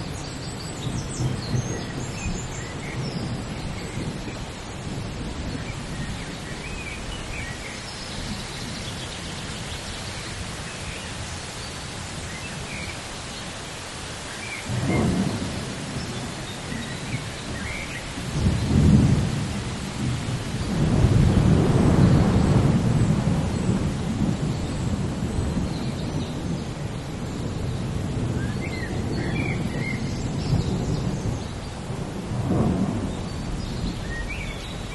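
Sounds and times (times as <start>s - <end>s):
steady rain: 0.0s - 34.9s
rolling thunder: 14.7s - 26.8s, 27.6s - 34.9s.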